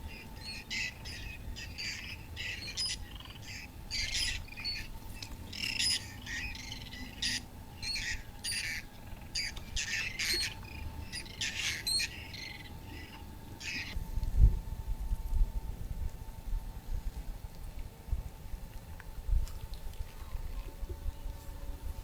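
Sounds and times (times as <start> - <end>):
birds calling: 0.0 - 14.0.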